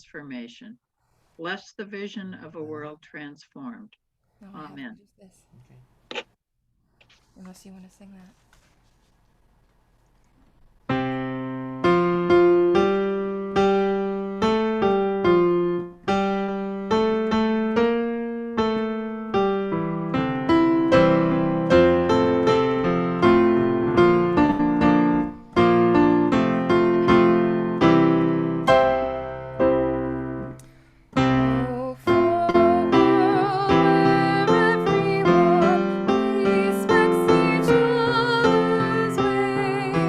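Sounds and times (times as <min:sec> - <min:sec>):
piano playing hymn chords: 0:10.9 - 0:40.0.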